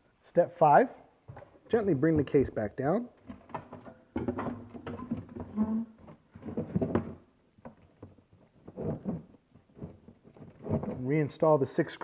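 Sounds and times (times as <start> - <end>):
plastic case knocks and rubbing: 3.3 - 11.0.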